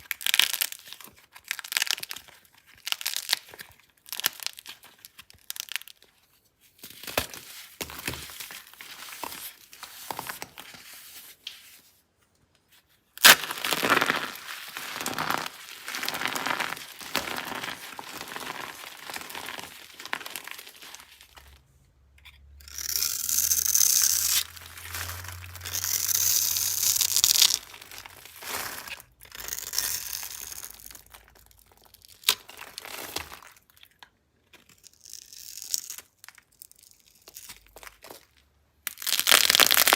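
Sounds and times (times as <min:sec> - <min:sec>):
dry soap crunching: 0:13.2 - 0:21.6, 0:22.7 - 0:39.9.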